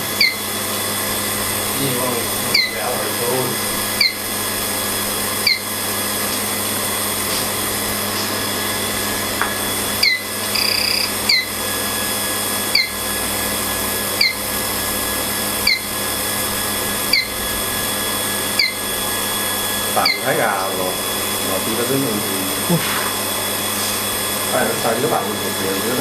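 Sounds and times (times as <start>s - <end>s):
welding machine running: 0.0s - 26.0s
click and chirp: 0.2s - 0.4s, 5.4s - 5.7s, 10.0s - 11.5s, 12.7s - 13.0s, 14.2s - 14.4s, 15.6s - 15.9s, 18.6s - 18.8s.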